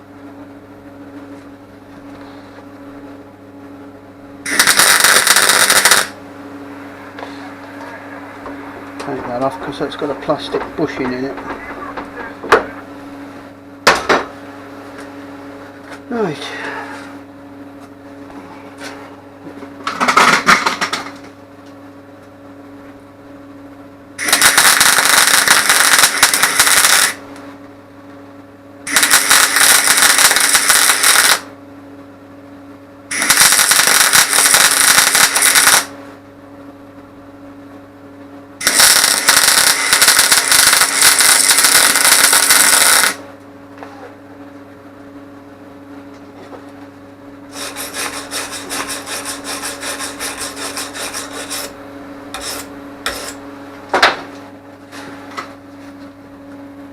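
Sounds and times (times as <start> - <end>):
steady low hum: 0.0 - 56.9
welding arc crackle: 4.5 - 6.2, 24.2 - 27.2, 28.9 - 31.5, 33.1 - 36.0, 38.6 - 43.2.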